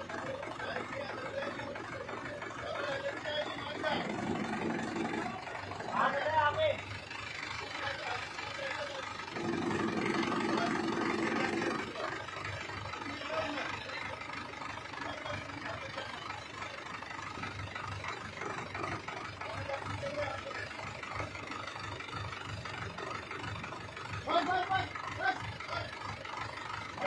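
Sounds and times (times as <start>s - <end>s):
excavator diesel engine running: 0.0s - 27.0s.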